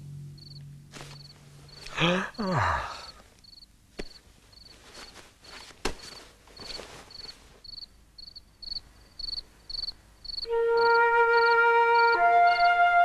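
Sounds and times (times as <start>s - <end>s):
cricket chirping: 0.4s - 12.8s
soft rustling: 0.9s - 1.9s, 3.2s - 7.9s.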